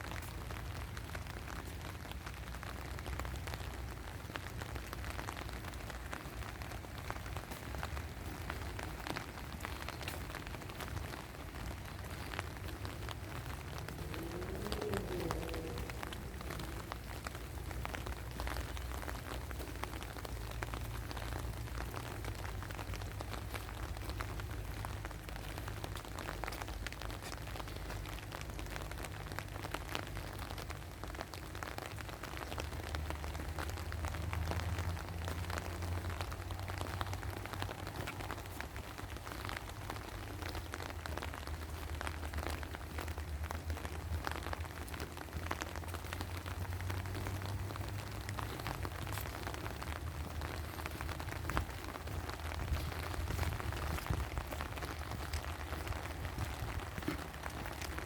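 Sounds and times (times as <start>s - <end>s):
rain falling: 0.0s - 58.0s
sharp raindrop ticks: 0.0s - 58.0s
low rumble: 11.8s - 22.6s.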